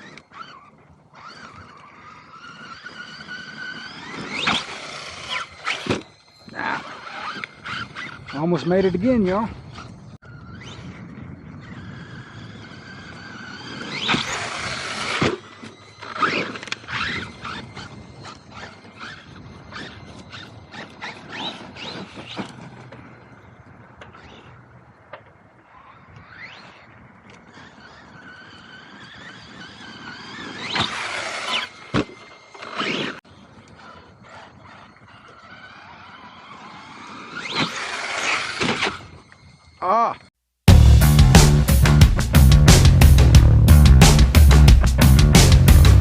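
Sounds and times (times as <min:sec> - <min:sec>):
electric motor whining and revving: 0:00.0 - 0:25.0, 0:25.6 - 0:39.4, 0:40.7 - 0:46.0
loud rush of noise: 0:40.7 - 0:46.0.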